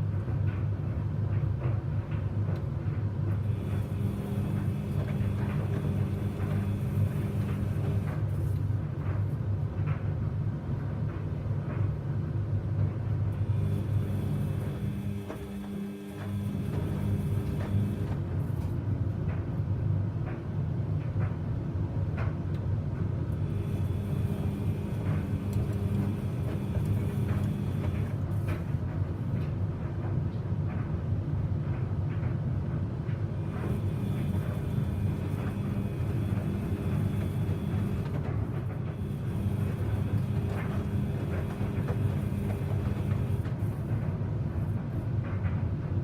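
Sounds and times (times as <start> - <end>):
washing machine hum and rumble: 0.0 - 46.0.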